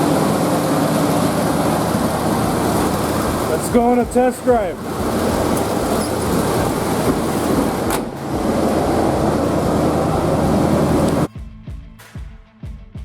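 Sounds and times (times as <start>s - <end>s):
pickup truck engine and road noise: 0.0s - 11.3s
music with a beat: 4.2s - 13.0s.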